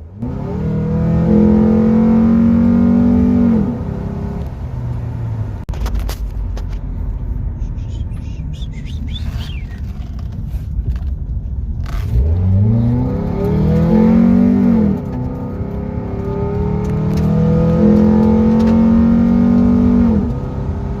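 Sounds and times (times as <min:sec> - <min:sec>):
car engine accelerating hard: 0:00.0 - 0:05.7, 0:11.8 - 0:21.0
low road rumble: 0:00.0 - 0:21.0.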